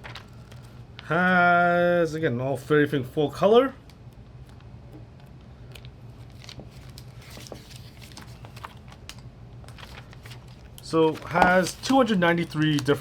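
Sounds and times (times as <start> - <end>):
paper pages rustling: 0.0 - 1.1, 5.7 - 13.0
low steady hum: 0.0 - 13.0.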